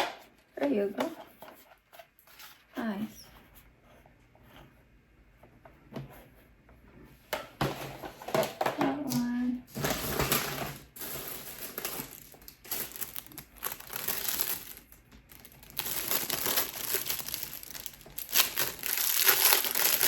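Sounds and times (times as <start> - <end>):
packaging crinkling: 9.7 - 20.0.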